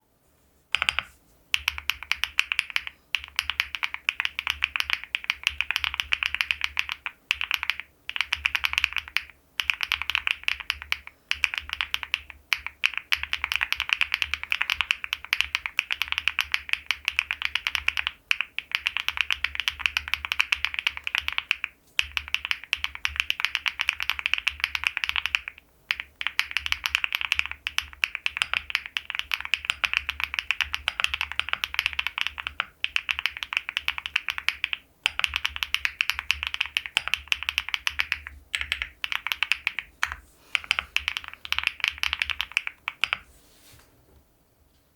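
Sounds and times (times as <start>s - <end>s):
fast mechanical keyboard typing: 0.8s - 43.2s.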